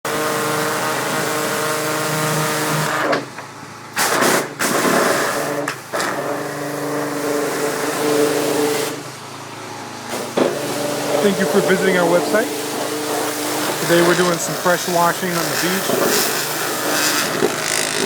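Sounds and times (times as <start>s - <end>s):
pressure washer engine running: 0.1s - 18.0s
water spray hissing: 11.2s - 18.0s.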